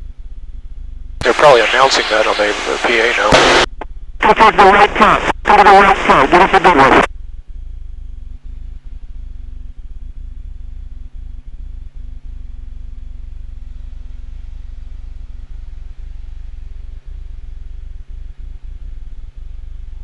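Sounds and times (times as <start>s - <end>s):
piston aircraft engine drone: 1.2s - 7.1s.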